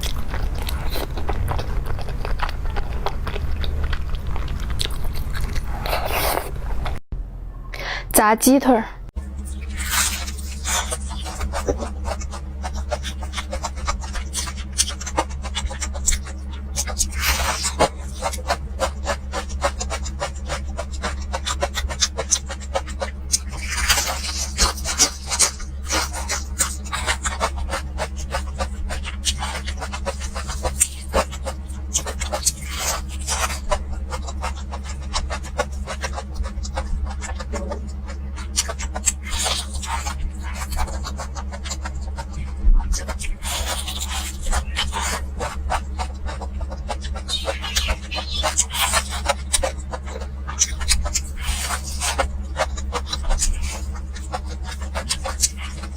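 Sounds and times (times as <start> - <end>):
person chewing crunchy food: 0.0 - 7.0, 9.1 - 55.9
low hum: 0.0 - 55.9.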